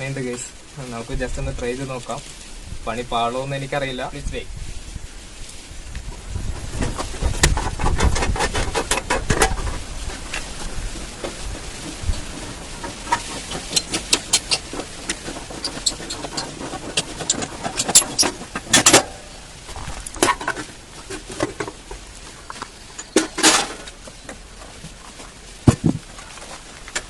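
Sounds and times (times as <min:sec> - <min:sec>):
clattering rattle: 0:11.3 - 0:19.3.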